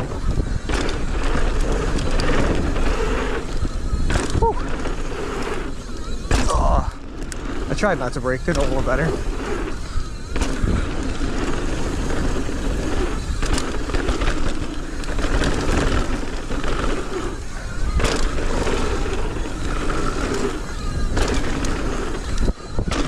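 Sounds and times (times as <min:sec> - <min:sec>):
bike tyre roar: 0:00.0 - 0:23.0
wind rumble: 0:00.0 - 0:23.0
sharp knocks from bike: 0:00.6 - 0:01.4, 0:18.0 - 0:18.8.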